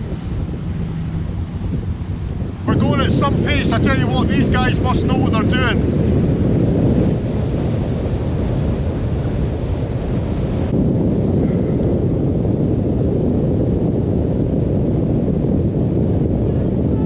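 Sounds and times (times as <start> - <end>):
boat engine: 0.0 - 12.0
hull through water: 0.0 - 17.0
wind on microphone: 0.0 - 17.0.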